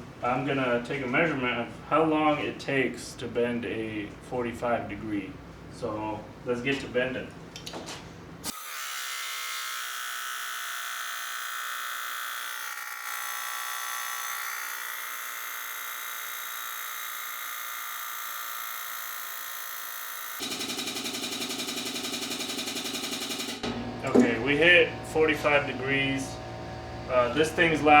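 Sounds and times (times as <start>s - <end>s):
hydraulic pump buzzing: 11.0s - 28.0s.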